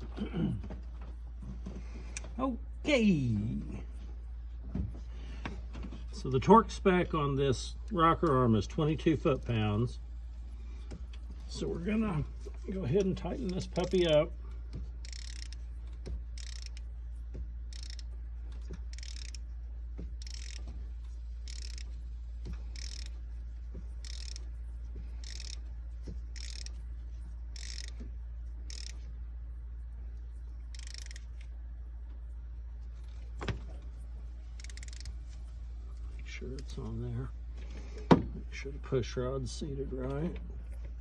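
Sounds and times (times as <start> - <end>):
ratchet wrench clicking: 15.0 - 20.8, 21.4 - 23.2, 23.8 - 24.6, 25.2 - 29.2, 30.6 - 31.5, 34.5 - 35.4.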